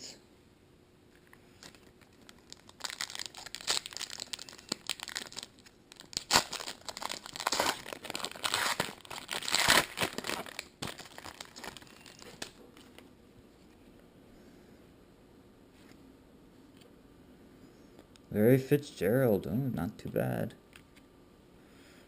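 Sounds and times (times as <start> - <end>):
plastic wrapper crinkling and tearing: 1.2 - 13.0.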